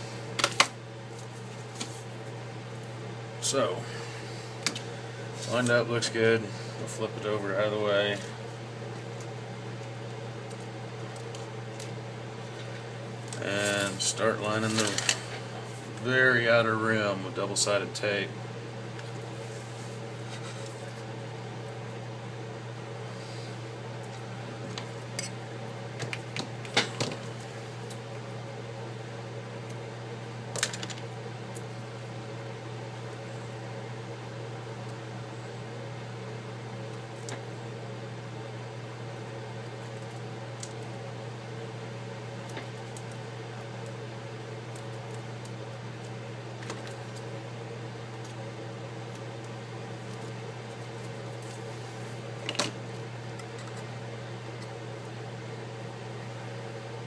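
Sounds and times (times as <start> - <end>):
low electrical hum: 0.0 - 57.0.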